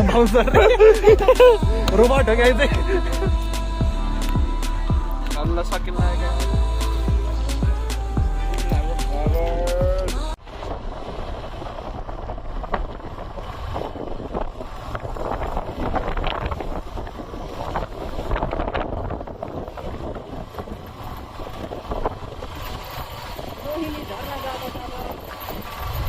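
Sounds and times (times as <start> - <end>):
wind buffeting microphone: 9.8 - 26.0.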